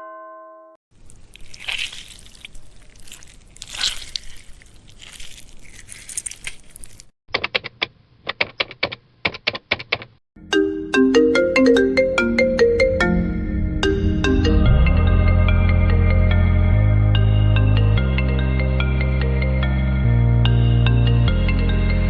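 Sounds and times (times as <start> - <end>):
wet crackling splatter effect: 0.9 - 7.1
marimba ringtone melody: 10.4 - 15.0.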